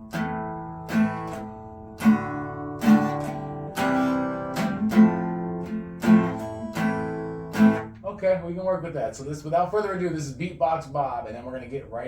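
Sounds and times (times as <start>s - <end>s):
acoustic guitar strummed slowly: 0.0s - 8.0s.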